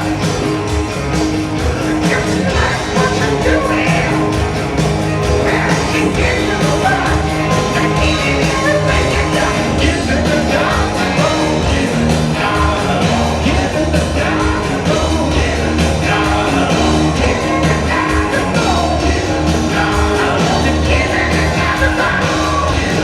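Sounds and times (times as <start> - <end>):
hard rock music with singing: 0.0 - 23.0.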